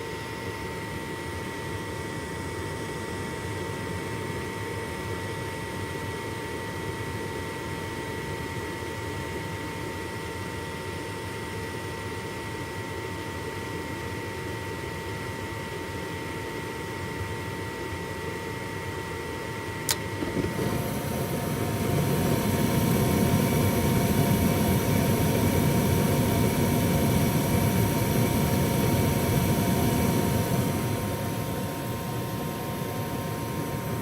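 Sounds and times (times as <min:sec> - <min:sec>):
gas furnace rushing: 0:19.9 - 0:34.0.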